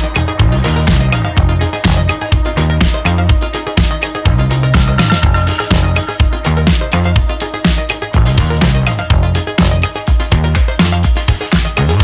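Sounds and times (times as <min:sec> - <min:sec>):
electronic dance music: 0:01.8 - 0:11.9.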